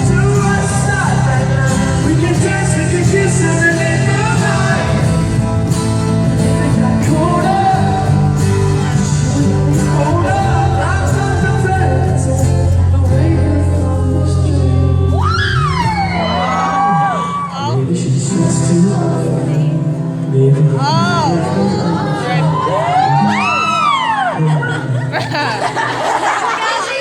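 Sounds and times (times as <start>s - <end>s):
bass and drums: 0.0s - 16.9s
person singing: 6.4s - 22.7s.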